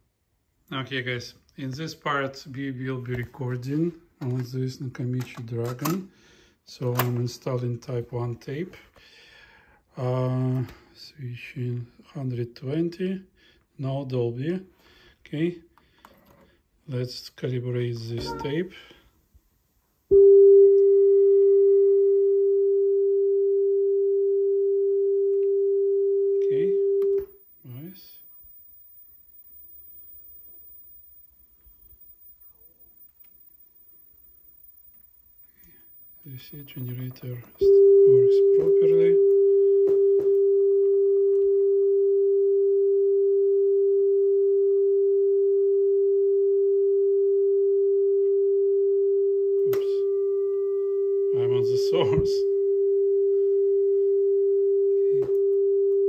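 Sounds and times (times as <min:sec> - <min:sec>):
steady pure test tone: 0:20.1 - 0:42.1, 0:49.4 - 0:56.0.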